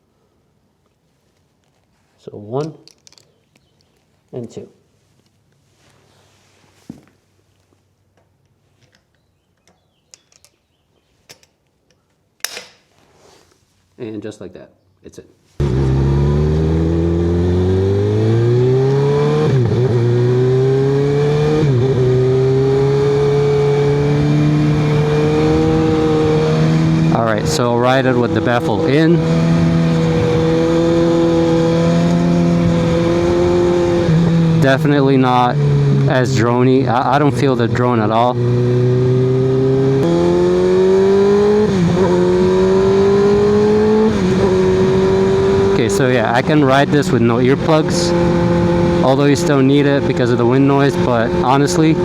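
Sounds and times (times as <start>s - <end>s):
motorcycle engine running: 15.6s - 18.7s
motorcycle engine revving: 15.6s - 52.0s.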